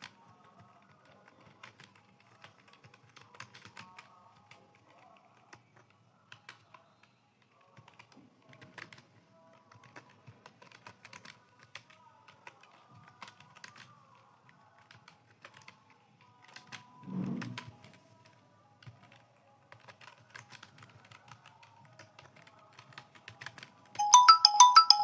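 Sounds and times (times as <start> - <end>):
keyboard typing: 0.5 - 6.7, 7.8 - 13.9, 19.1 - 25.0.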